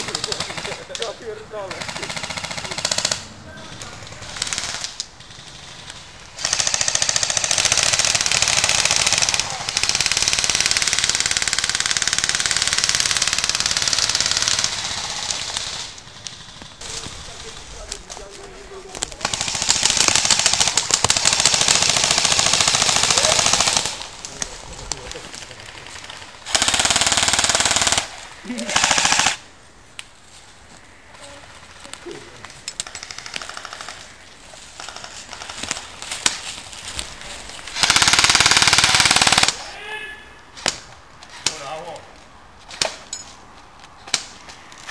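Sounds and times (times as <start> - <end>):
airsoft guns firing full-auto: 0.0 - 17.9, 19.0 - 24.2, 25.6 - 29.4, 32.8 - 34.2, 37.7 - 39.6
airsoft gun full auto fire: 26.5 - 29.4, 37.8 - 39.6.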